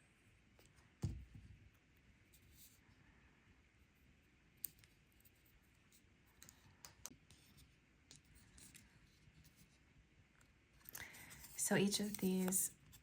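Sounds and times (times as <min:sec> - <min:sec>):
soft paper rustling: 0:04.0 - 0:13.0.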